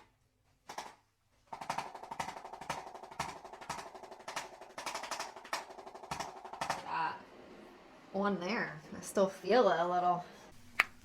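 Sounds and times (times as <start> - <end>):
rapid percussive tapping: 0.6 - 7.0.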